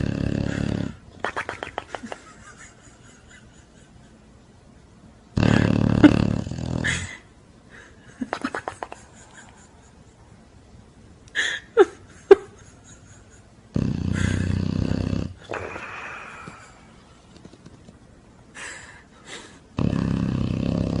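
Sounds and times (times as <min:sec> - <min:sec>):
rattling snores: 0:00.0 - 0:01.0, 0:05.4 - 0:07.1, 0:13.8 - 0:16.2, 0:19.8 - 0:21.0.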